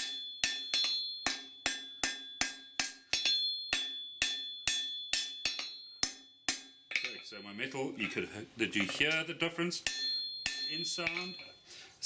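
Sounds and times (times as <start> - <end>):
hammer on steel over anvil: 0.0 - 7.4, 9.7 - 11.6.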